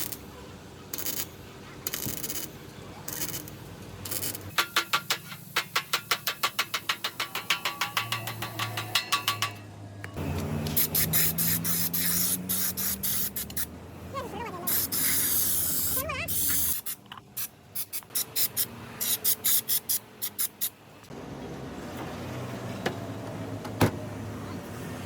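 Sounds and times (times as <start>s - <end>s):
steady spraying hiss: 14.7s - 20.8s.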